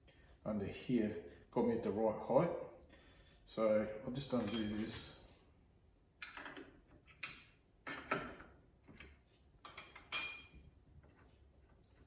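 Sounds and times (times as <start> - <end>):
hand tool clinking on metal: 9.7 - 10.6.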